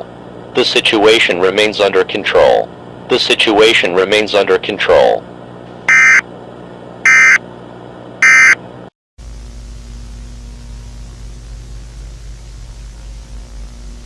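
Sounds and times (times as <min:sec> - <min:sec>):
digital data bursts: 0:05.9 - 0:06.2, 0:07.1 - 0:07.4, 0:08.2 - 0:08.6.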